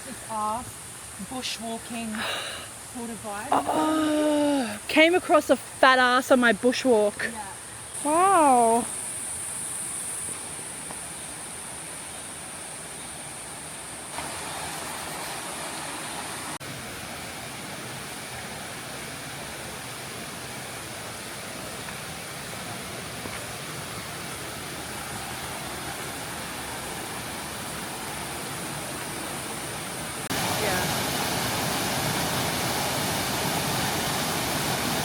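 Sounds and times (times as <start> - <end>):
thin high hiss: 0.0 - 14.2
waterfall rushing: 14.1 - 35.0.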